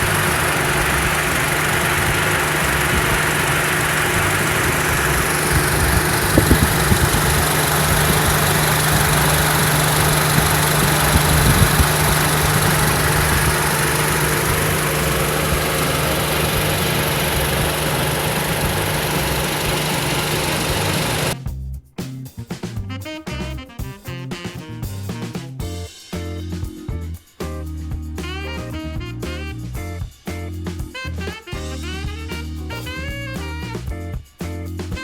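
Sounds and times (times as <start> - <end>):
car engine idling: 0.0 - 21.4
engine knocks: 0.0 - 21.4
music: 0.0 - 35.0.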